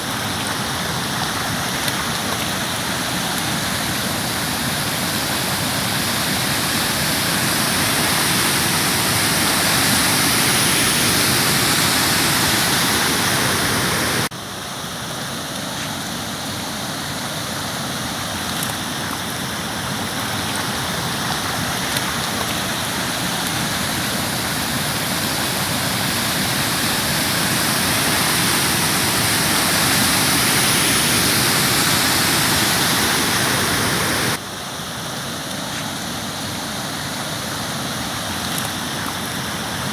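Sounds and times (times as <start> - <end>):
heavy rain pouring: 0.0 - 14.3, 18.4 - 34.6
running floodwater: 0.0 - 39.9.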